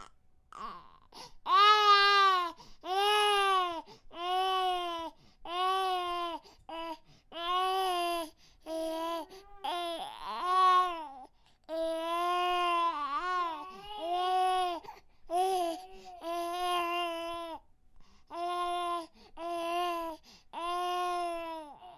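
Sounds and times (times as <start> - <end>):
baby crying: 0.0 - 8.2, 8.8 - 17.6.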